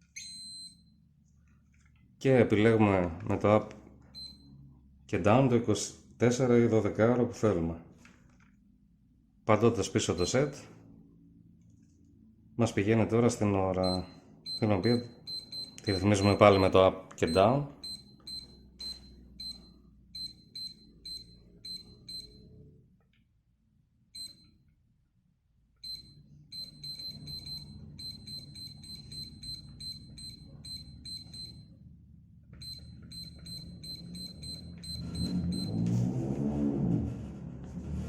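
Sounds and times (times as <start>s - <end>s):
alarm clock button beeps: 0.1s - 0.9s, 13.8s - 22.6s, 24.2s - 24.6s, 25.8s - 31.7s, 32.6s - 35.8s.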